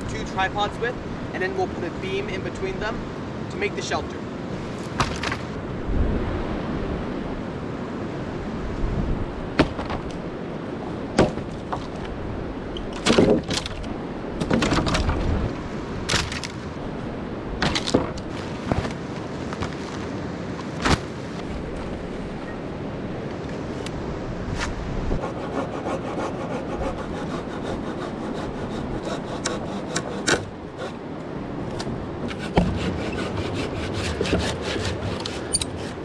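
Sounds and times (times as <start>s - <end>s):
sticks snapping and knocking: 13.0s - 15.2s, 16.1s - 16.7s, 17.6s - 18.9s.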